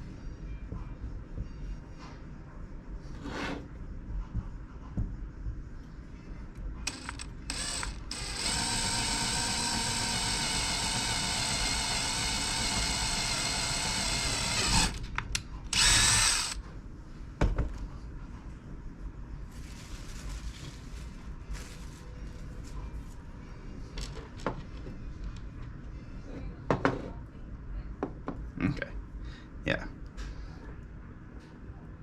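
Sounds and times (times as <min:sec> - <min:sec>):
cordless drill motor: 0:06.9 - 0:15.0, 0:15.7 - 0:16.6.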